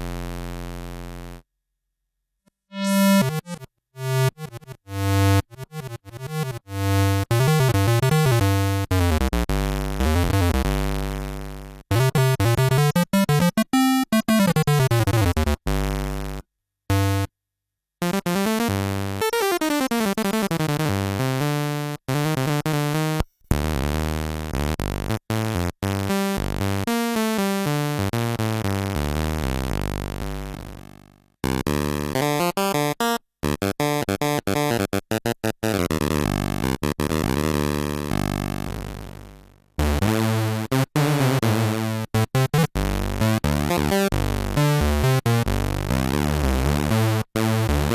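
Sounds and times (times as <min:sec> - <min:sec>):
analog synthesizer notes: 0:02.7 - 0:17.3, 0:18.0 - 0:47.9.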